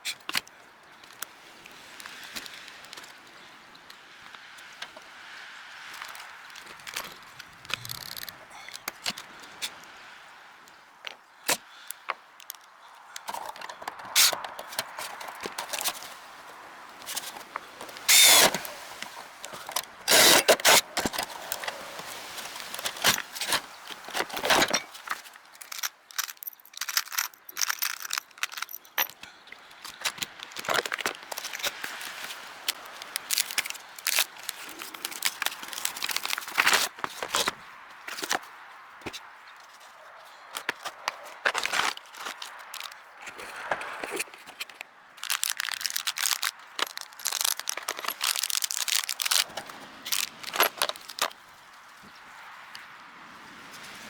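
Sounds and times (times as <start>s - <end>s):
metal tools clattering: 24.4s - 29.2s.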